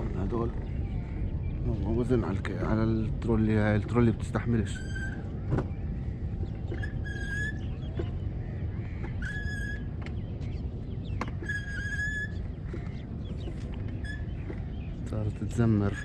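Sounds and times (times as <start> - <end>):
steady low rumble: 0.0 - 16.0
trolley wheel squealing: 4.6 - 5.4, 6.7 - 8.1, 9.1 - 10.0, 11.2 - 13.0, 13.9 - 14.6.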